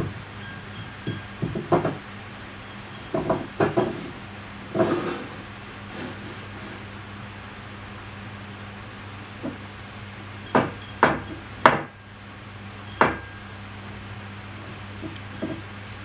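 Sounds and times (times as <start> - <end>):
cup knocking on hard surface: 1.4 - 2.0, 3.1 - 4.1.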